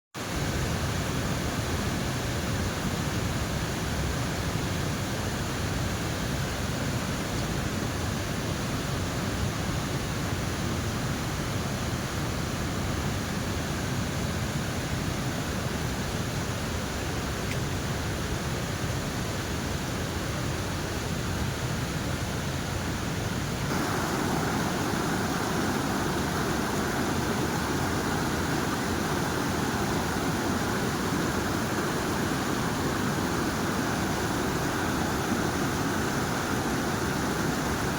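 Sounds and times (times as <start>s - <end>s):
waterfall roaring: 8.6s - 37.9s.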